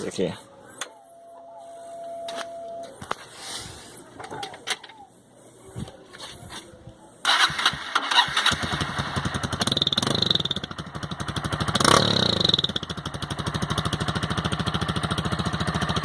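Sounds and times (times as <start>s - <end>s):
motorcycle engine revving and idling: 7.3s - 16.0s.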